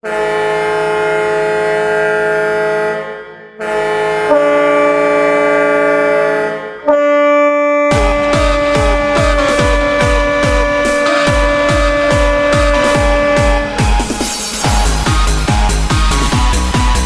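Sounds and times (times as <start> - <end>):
goal horn blasts: 0.0 - 15.3
electronic dance music: 7.9 - 17.0.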